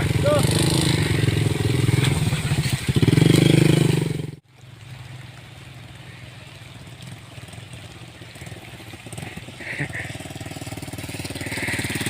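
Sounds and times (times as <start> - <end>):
engine running with pulsing rhythm: 7.1 - 12.0.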